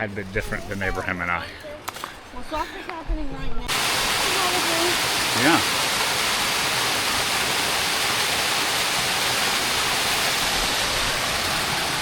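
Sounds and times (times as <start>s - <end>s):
waterfall rushing: 3.7s - 12.0s.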